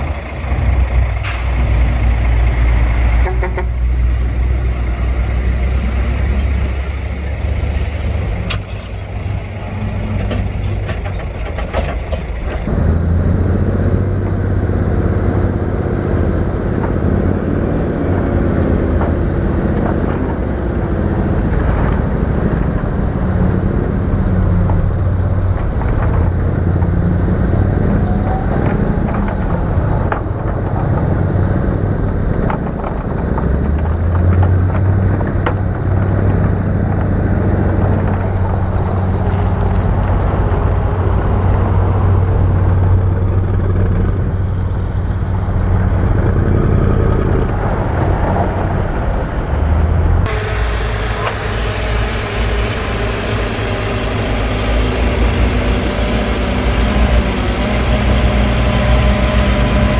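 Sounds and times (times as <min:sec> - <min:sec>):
metal knocks and clanks: 0:00.0 - 0:12.7
heavy diesel engine running: 0:00.0 - 0:59.9.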